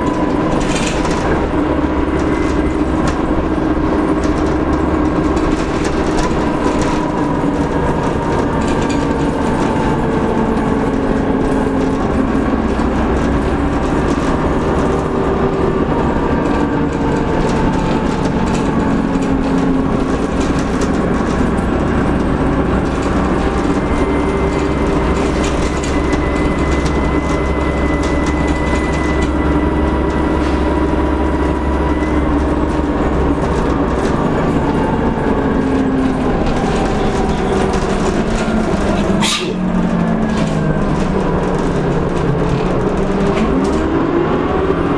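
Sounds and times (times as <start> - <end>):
rattles: 0.0 - 44.0
bus diesel engine running: 0.0 - 44.9.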